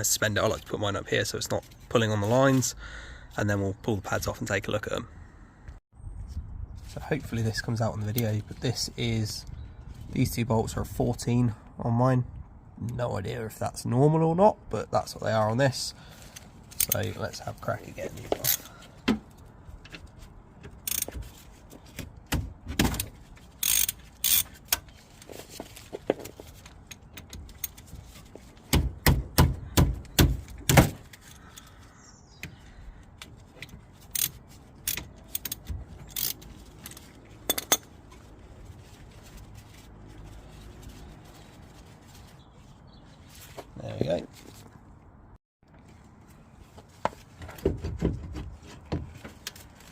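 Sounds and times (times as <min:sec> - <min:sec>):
socket wrench clicking on bolts: 0:20.9 - 0:21.1, 0:23.6 - 0:24.5, 0:34.1 - 0:37.8.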